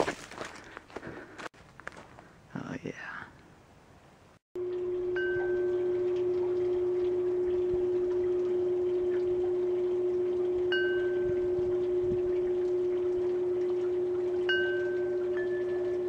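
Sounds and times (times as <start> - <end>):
steady low hum: 4.6 - 16.0.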